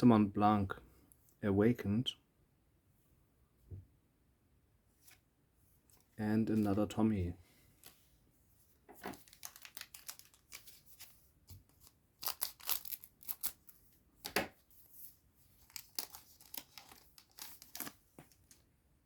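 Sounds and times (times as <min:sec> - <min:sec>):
foil pack tearing and crinkling: 0:09.1 - 0:11.1, 0:11.7 - 0:13.7, 0:15.6 - 0:18.6.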